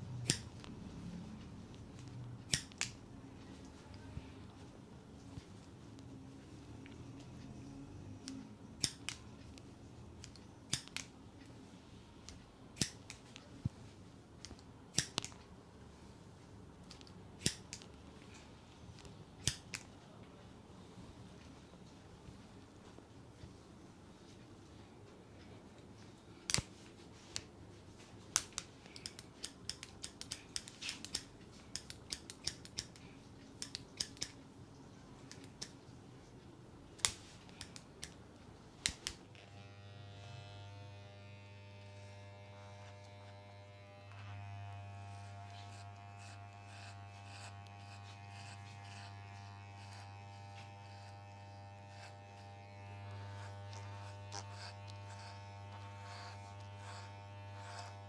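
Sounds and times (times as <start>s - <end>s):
scissors snipping hair: 0.2s - 0.8s, 2.0s - 3.0s, 8.2s - 9.6s, 10.2s - 11.1s, 12.2s - 13.5s, 14.4s - 15.5s, 16.8s - 18.4s, 19.0s - 19.9s, 26.4s - 26.7s, 28.3s - 34.4s, 35.2s - 35.8s, 37.0s - 38.2s, 38.8s - 39.5s, 42.5s - 58.0s
electric hair trimmer buzzing: 39.3s - 58.0s.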